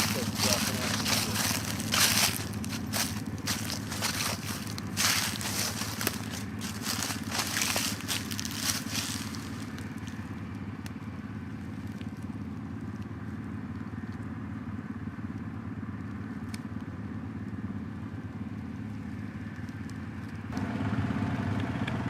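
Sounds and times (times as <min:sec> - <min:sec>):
brush crunching underfoot: 0:00.0 - 0:10.8, 0:11.4 - 0:12.7
atv engine running: 0:00.0 - 0:22.0.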